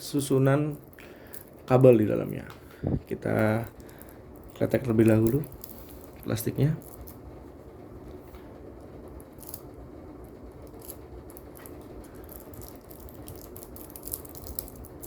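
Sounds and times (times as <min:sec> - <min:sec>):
low background hum: 0:00.0 - 0:15.0
plastic cable jacket crinkling: 0:10.8 - 0:15.0.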